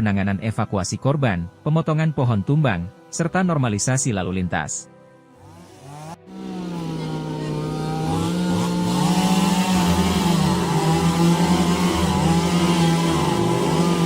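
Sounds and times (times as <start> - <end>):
chainsaw cutting wood: 5.3 - 14.0.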